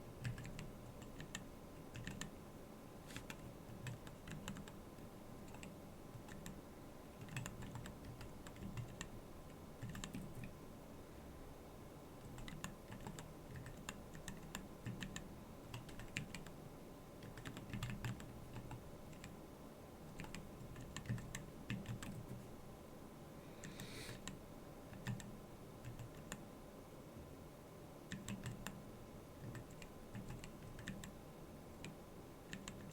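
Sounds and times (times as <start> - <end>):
mechanical keyboard typing: 0.2 - 2.3, 3.1 - 4.8, 5.4 - 6.6, 7.2 - 9.1, 9.8 - 10.5, 12.2 - 16.5, 17.2 - 19.3, 20.1 - 22.4, 23.6 - 26.4, 28.1 - 28.8, 29.4 - 31.2, 31.8 - 32.9.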